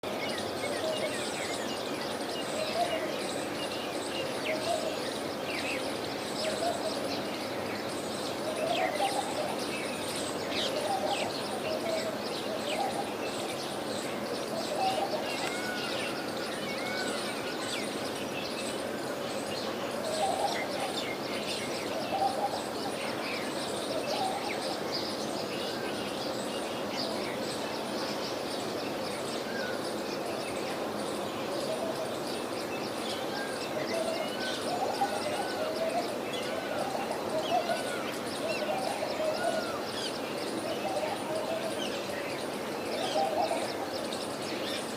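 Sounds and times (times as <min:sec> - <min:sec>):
dove cooing: 0:34.7 - 0:39.8.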